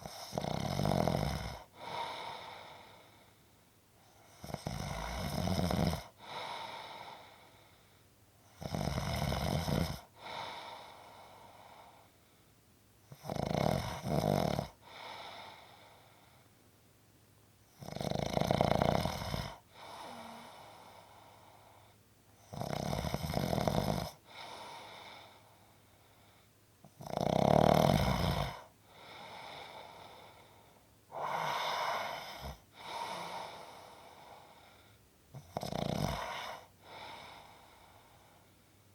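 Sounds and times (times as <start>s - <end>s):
loud snoring: 0.0s - 2.2s, 4.2s - 6.5s, 8.5s - 10.4s, 13.1s - 15.1s, 17.7s - 20.9s, 22.4s - 24.9s, 26.9s - 29.8s, 31.1s - 33.8s, 35.3s - 37.8s
soft breaths: 1.1s - 16.8s, 18.7s - 27.0s, 27.6s - 38.9s.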